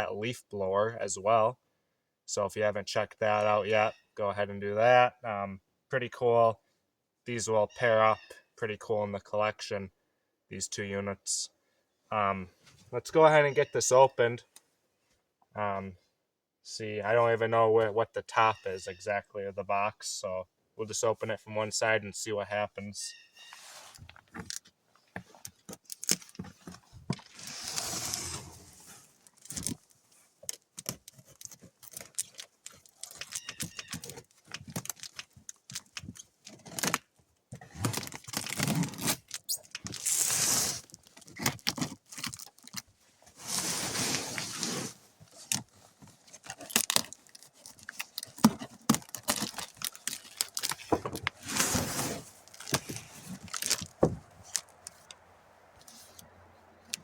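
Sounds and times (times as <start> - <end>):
clicks scrapes and rustling: 23.4 - 55.2
tape and cardboard tearing: 25.7 - 55.1.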